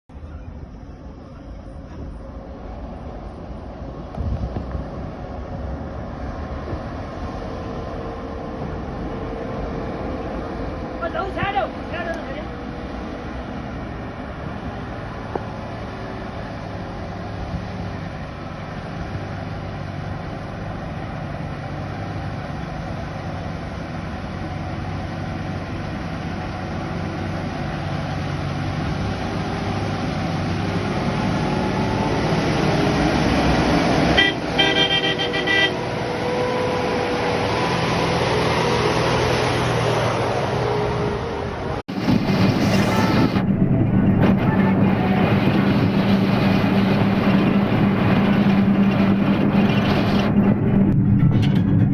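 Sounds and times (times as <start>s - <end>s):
truck engine running: 0.1s - 51.9s
vehicle horn: 34.1s - 35.9s.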